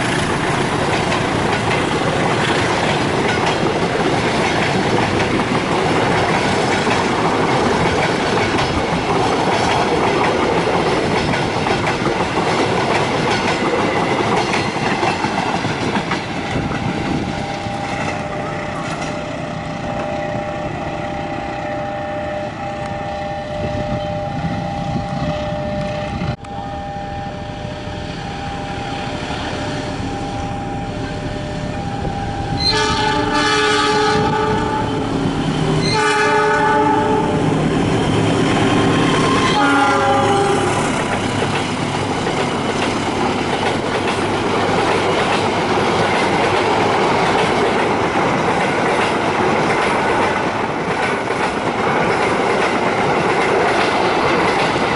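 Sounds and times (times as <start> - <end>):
train wheels clacking over rail joints: 0.0 - 18.2, 37.8 - 54.9
train rumble: 0.0 - 54.9
steady tone: 17.1 - 33.4
locomotive horn blasts: 17.2 - 28.9, 30.0 - 35.2, 35.8 - 37.5, 39.0 - 40.9.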